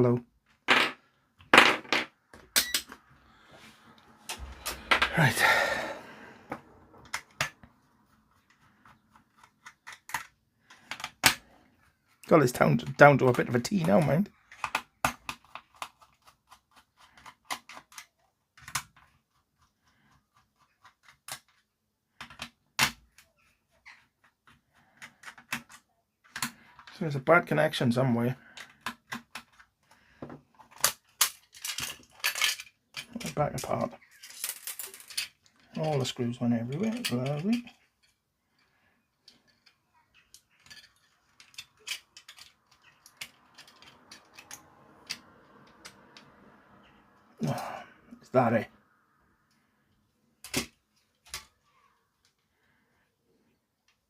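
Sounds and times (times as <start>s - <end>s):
plastic parts clicking and tapping: 6.5s - 27.0s, 28.4s - 46.4s, 50.4s - 52.6s.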